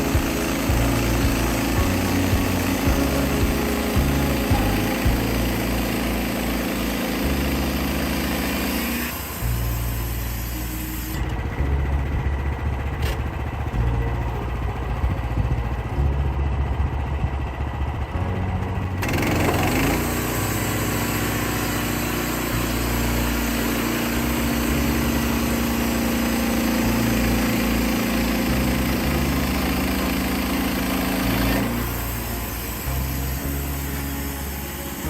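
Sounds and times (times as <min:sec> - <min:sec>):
high hiss: 0:00.0 - 0:06.8
engine humming: 0:00.0 - 0:35.0.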